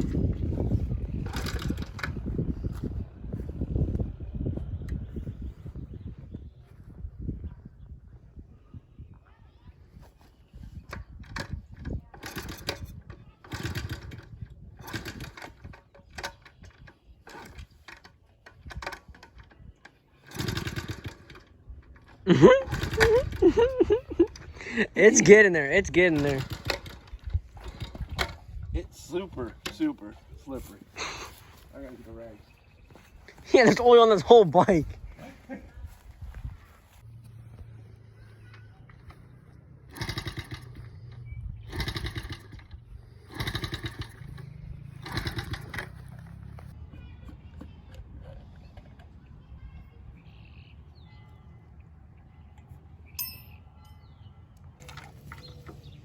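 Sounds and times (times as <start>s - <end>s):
engine turning over: 0.0s - 2.5s, 11.1s - 28.4s, 36.9s - 46.8s
kick-start ratchet clattering: 1.2s - 2.3s, 10.9s - 24.5s, 25.9s - 28.4s, 38.4s - 46.7s.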